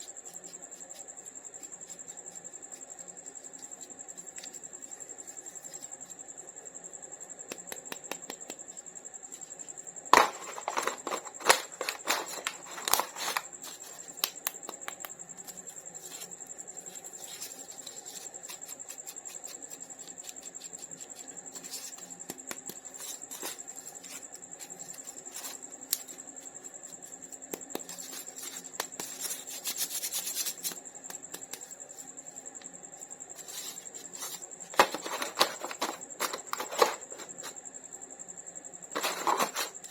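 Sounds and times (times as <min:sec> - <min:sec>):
packaging clicks and crackles: 0:10.2 - 0:16.3, 0:33.4 - 0:37.5, 0:38.9 - 0:39.9.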